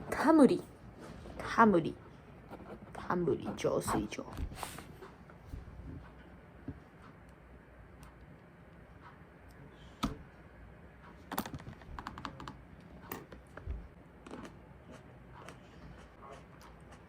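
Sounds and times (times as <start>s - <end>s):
typing on computer keyboard: 11.3s - 12.6s.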